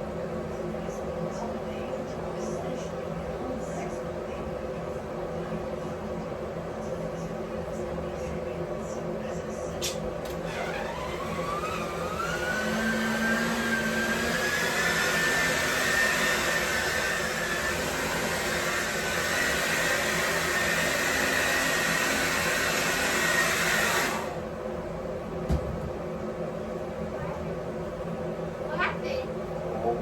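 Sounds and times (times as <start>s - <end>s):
hair dryer running: 10.2s - 24.4s.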